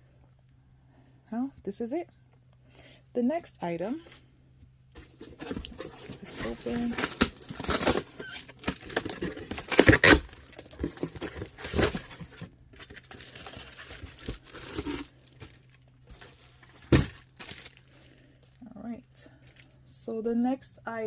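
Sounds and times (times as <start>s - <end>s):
packaging tearing and crinkling: 5.2s - 18.2s.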